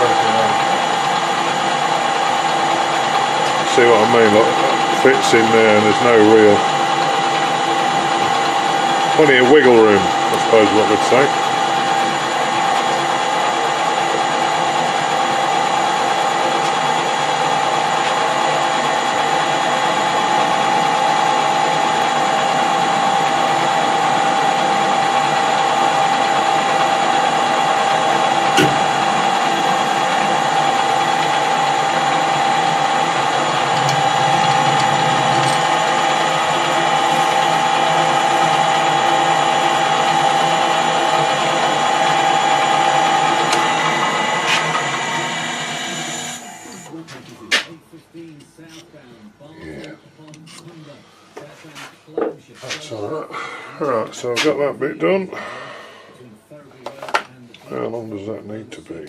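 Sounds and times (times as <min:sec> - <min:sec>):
metal lathe gear whine: 0:00.0 - 0:47.0.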